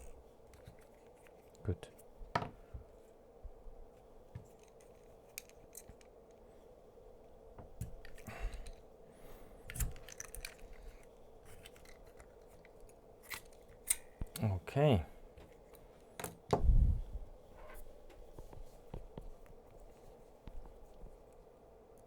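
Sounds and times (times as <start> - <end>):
steady low hum: 0.0 - 22.0
small parts clicking and scraping: 4.4 - 6.4, 9.6 - 14.2.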